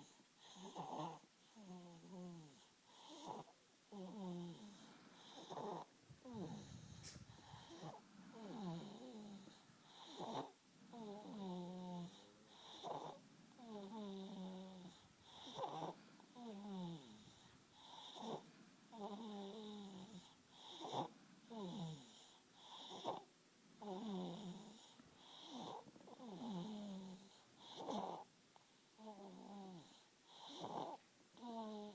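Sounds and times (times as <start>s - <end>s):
person snoring: 0.5s - 23.2s.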